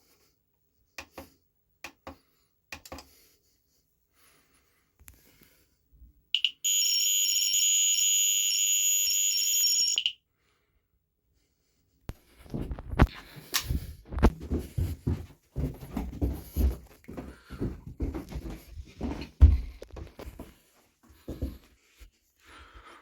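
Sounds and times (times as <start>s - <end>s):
smoke alarm tone: 6.4s - 10.2s.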